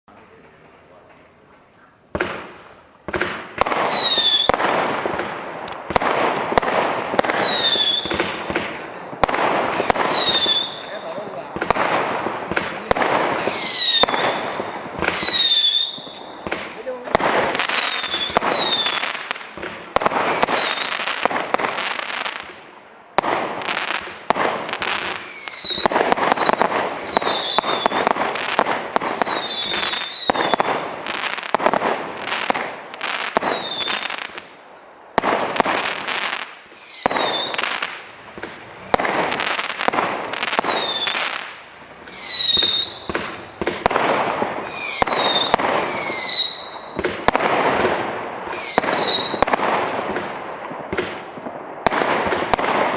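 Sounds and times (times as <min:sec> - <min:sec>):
fireworks shots and crackle: 0:02.1 - 0:52.9
falling firework whistles: 0:03.2 - 0:04.8, 0:07.1 - 0:08.7, 0:09.7 - 0:11.2, 0:13.3 - 0:16.6, 0:17.4 - 0:19.2, 0:20.0 - 0:22.3, 0:24.8 - 0:31.5, 0:32.4 - 0:34.3, 0:36.1 - 0:47.5, 0:48.5 - 0:49.7.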